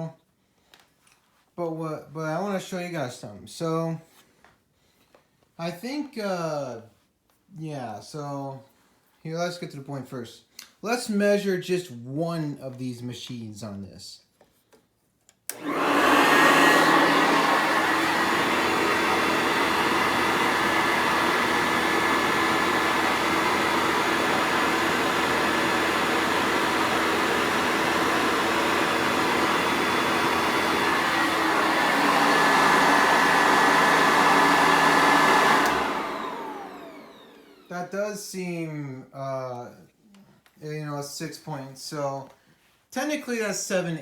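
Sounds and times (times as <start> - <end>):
vacuum cleaner running with whine: 15.5 - 37.7.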